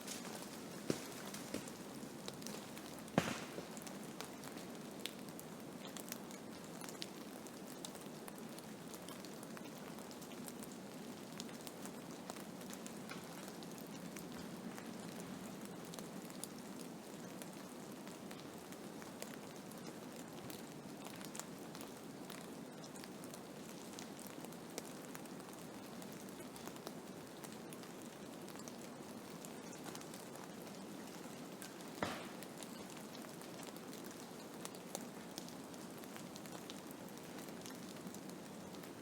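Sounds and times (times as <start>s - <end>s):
snow ticking: 0.0s - 5.2s, 30.7s - 33.2s.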